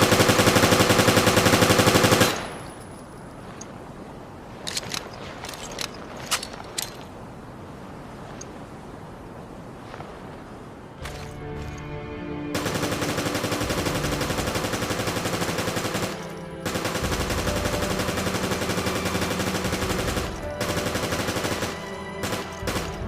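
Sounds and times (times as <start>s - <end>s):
automatic gunfire bursts: 0.0s - 2.6s, 12.6s - 23.0s.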